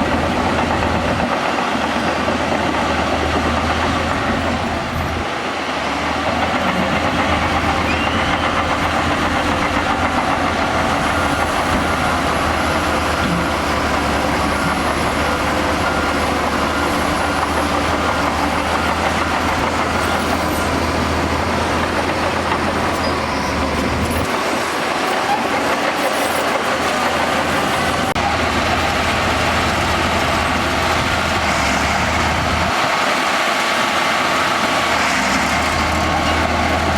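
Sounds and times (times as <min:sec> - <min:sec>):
diesel bulldozer running: 0:00.0 - 0:36.9.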